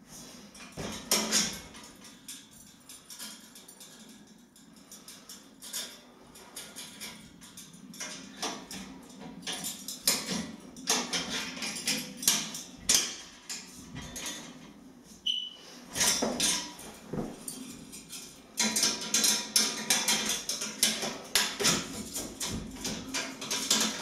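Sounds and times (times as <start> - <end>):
high squeak: 15.2 - 15.6
metal trestle clanking and rattling: 16.0 - 24.0.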